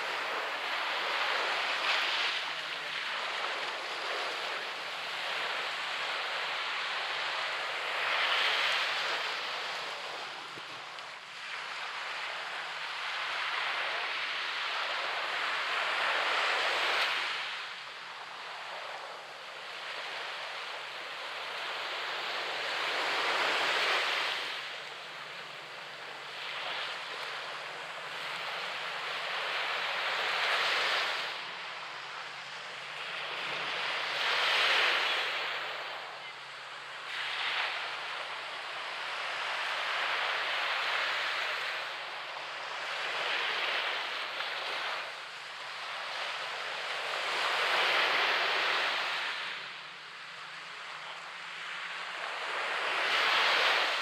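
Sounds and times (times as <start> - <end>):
surf breaking on sandy beach: 0.0 - 12.0.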